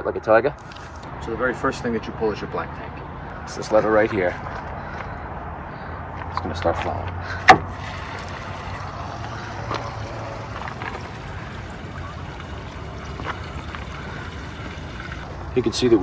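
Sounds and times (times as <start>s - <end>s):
waste water flowing through hose: 7.4s - 16.0s.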